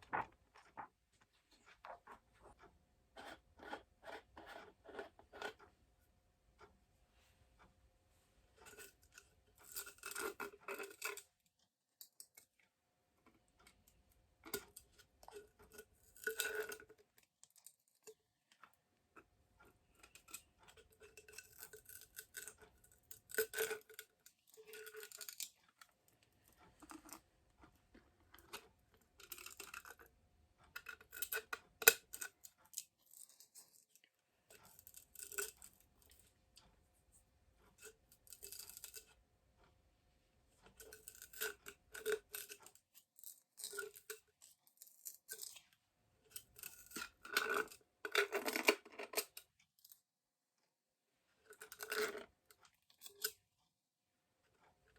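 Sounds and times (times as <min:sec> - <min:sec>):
plastic glowstick rustling and scraping: 0:00.0 - 0:05.7, 0:31.2 - 0:36.7.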